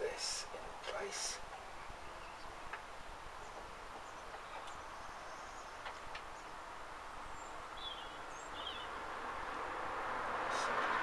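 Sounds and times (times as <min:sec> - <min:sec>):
faint bird chirps: 0:03.4 - 0:06.6.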